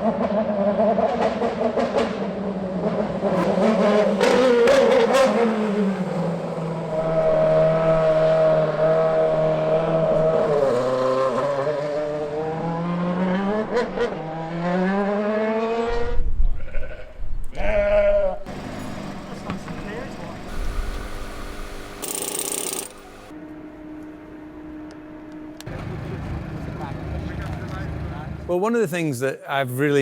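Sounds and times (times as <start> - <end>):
racing car engine revving: 0.5 - 16.0.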